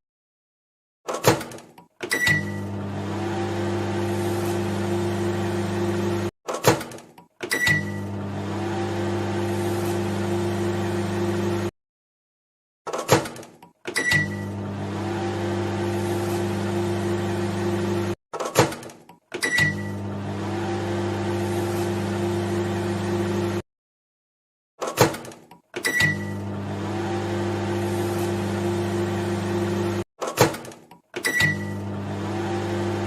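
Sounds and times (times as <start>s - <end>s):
short microwave beep: 2.1s - 2.7s, 7.5s - 8.1s, 14.0s - 14.6s, 19.4s - 20.0s, 25.9s - 26.5s, 31.3s - 31.9s
microwave oven humming: 2.2s - 6.3s, 7.6s - 11.7s, 14.0s - 18.2s, 19.5s - 23.6s, 25.9s - 30.0s, 31.3s - 33.0s.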